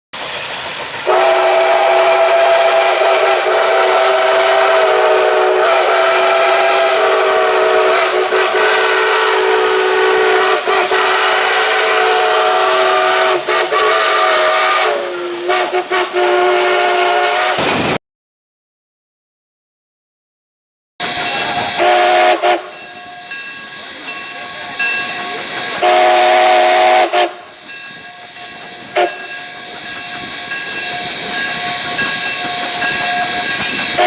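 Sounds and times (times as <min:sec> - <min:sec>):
steam hiss: 0:00.2 - 0:18.0, 0:21.0 - 0:34.0
locomotive whistle chord: 0:01.0 - 0:17.6, 0:21.0 - 0:34.0.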